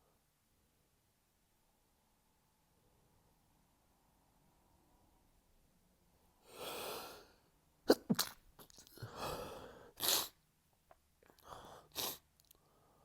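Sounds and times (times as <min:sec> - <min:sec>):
person sneezing: 0:07.9 - 0:09.3, 0:10.0 - 0:10.4, 0:11.9 - 0:12.2
noisy drawn-in breath: 0:11.4 - 0:13.0.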